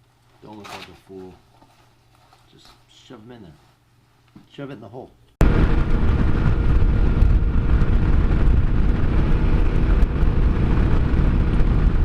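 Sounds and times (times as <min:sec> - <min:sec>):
motorcycle engine running: 0:05.4 - 0:12.0
wind noise: 0:05.4 - 0:12.0.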